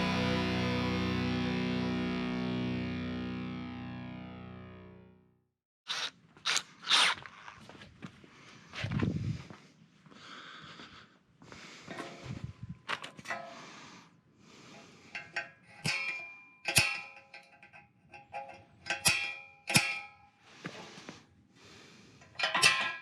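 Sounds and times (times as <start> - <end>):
handling and scraping: 5.9 - 9.6, 11.6 - 23.0
metal clanks ringing: 15.1 - 20.4, 22.2 - 23.0.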